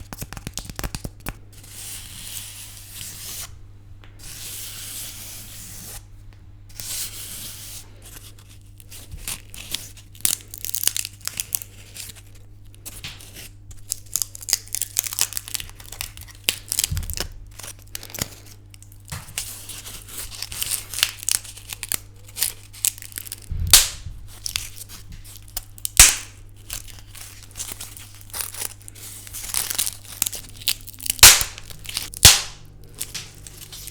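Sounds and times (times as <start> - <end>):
twigs crackling and snapping: 0.1 - 1.4, 9.2 - 33.9
sticks rustling and rubbing: 1.6 - 3.5, 6.7 - 10.2, 19.3 - 33.9.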